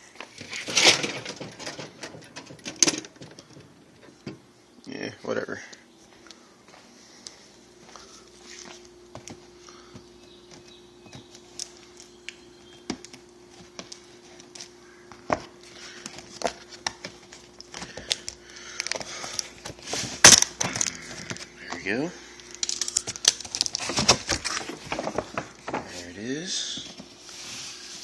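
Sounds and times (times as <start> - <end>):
cardboard rustling: 22.6 - 28.0.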